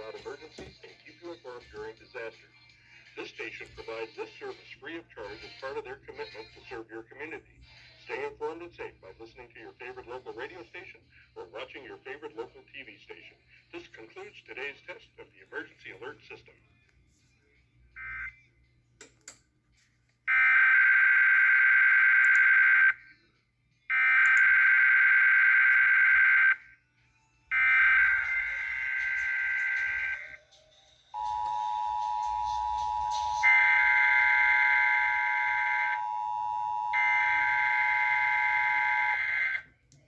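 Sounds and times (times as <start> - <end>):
two-tone attention signal: 31.2 - 39.4.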